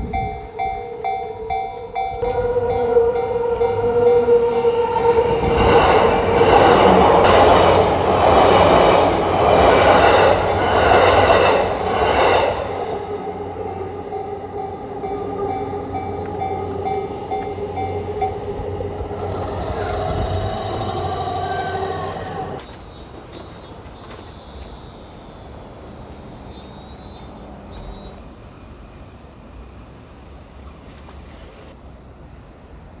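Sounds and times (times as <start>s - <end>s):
faint high chirping: 0.0s - 5.4s, 12.8s - 28.2s
level-crossing warning bell: 0.0s - 25.1s
train wheels rumbling and clattering: 0.0s - 28.4s
outdoor background noise: 0.0s - 33.0s.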